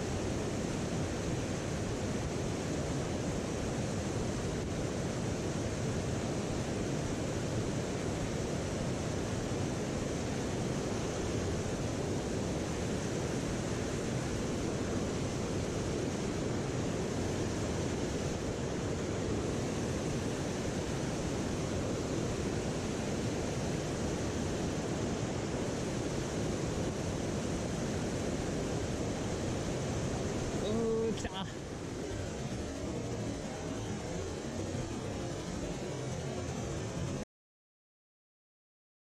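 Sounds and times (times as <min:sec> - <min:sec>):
stream water rushing: 0:00.1 - 0:37.2.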